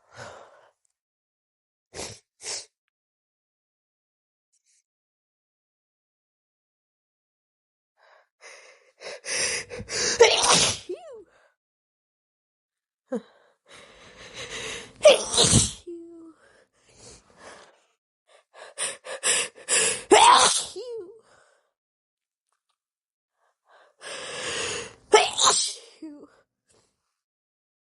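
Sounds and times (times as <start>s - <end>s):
woman sneezing: 10.2s - 11.2s, 15.0s - 16.0s, 20.1s - 20.8s, 25.2s - 26.2s.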